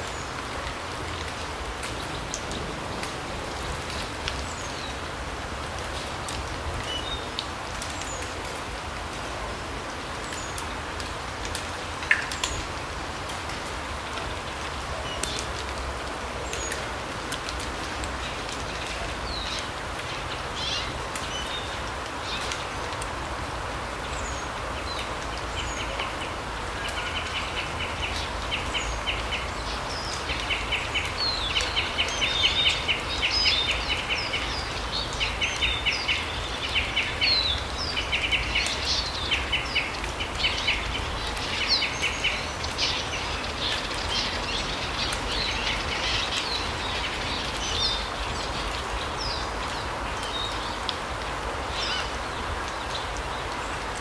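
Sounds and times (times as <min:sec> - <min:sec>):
songbirds trilling and chirping: 0:24.0 - 0:50.9.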